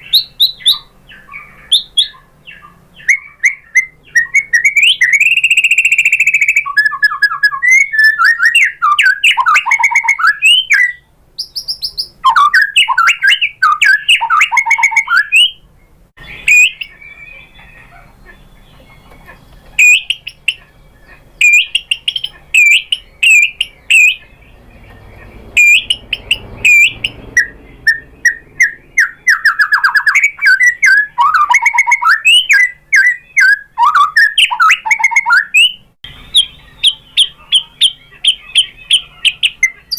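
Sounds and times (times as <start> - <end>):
bird singing whistled phrases: 0.0 - 15.6, 16.2 - 19.1, 19.7 - 39.9.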